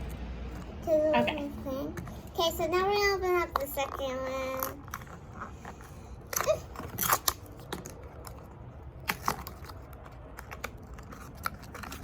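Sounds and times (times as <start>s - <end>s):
packaging crinkling and tearing: 3.8s - 12.0s.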